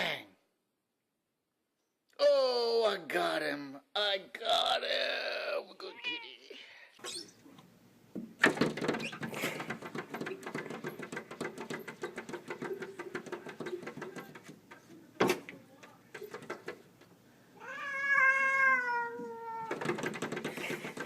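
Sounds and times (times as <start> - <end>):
cat meowing: 5.9 - 6.6, 17.6 - 19.8.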